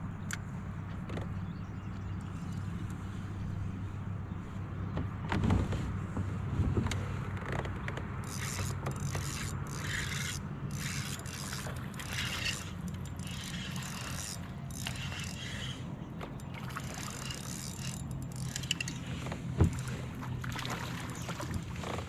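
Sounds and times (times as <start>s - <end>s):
low mechanical hum: 0.0s - 22.0s
whirring and scraping: 6.6s - 22.0s.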